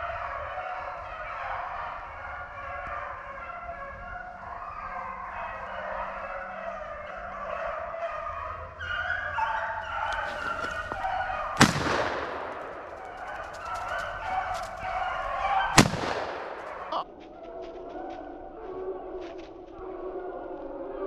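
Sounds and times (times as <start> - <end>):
hounds baying and yelping: 0.0 - 21.0
gunshots echoing: 10.2 - 17.0.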